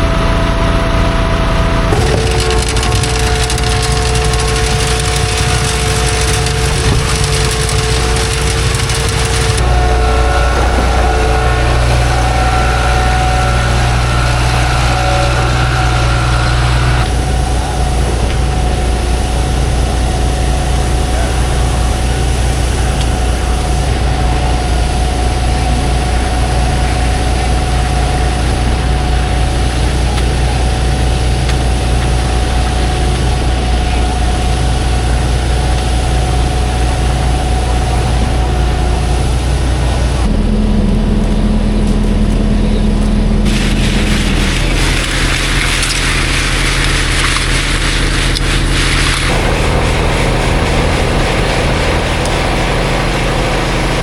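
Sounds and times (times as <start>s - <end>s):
higher tone: 0.0s - 47.2s
heavy diesel engine running: 0.0s - 54.0s.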